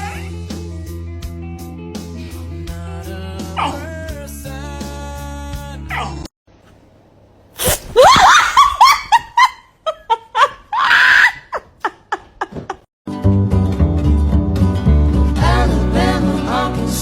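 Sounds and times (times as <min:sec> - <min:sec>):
excited vocal cries: 0:07.6 - 0:09.2.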